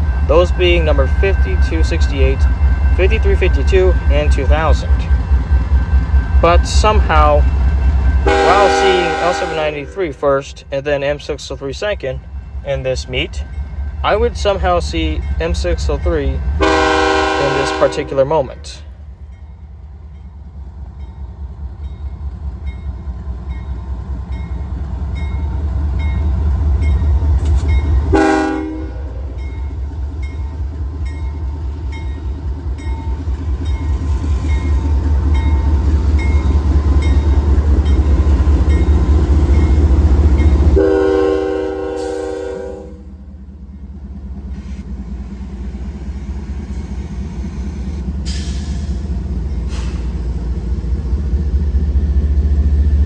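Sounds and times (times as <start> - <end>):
locomotive diesel rumble: 0.0 - 53.0
locomotive horn blasts: 8.2 - 10.0, 16.6 - 18.5, 28.1 - 29.3, 40.8 - 43.1.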